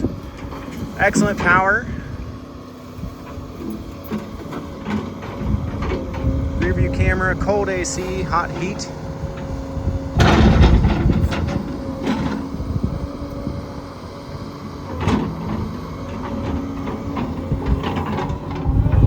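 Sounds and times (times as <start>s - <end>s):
excavator diesel engine running: 0.0s - 19.0s
clanks and knocks: 8.4s - 12.5s.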